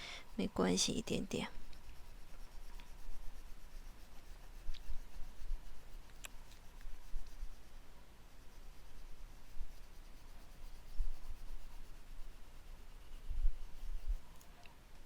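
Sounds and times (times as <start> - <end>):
colouring pencil rubbing on paper: 0.3 - 14.4.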